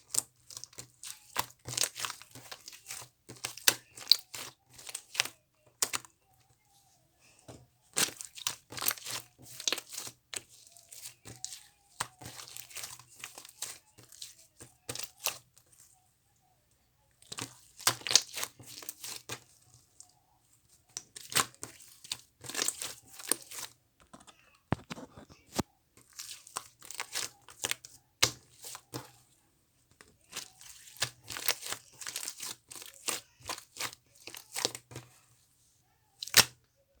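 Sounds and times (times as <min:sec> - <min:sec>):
slime crackling and popping: 0:17.3 - 0:19.4.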